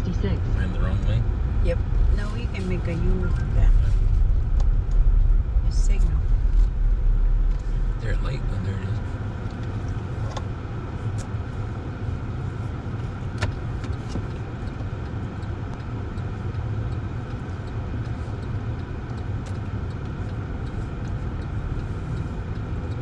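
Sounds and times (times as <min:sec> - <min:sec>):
car engine and road noise: 0:00.0 - 0:23.0.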